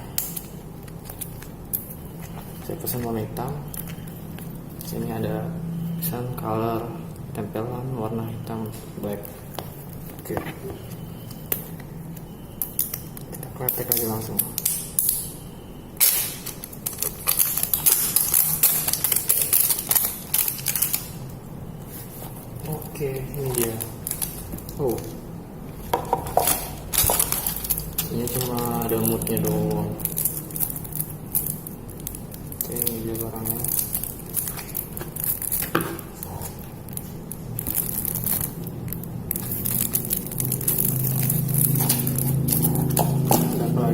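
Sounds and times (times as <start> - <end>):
packaging crackling and ripping: 16.0 - 21.3, 21.9 - 25.2, 25.8 - 43.9.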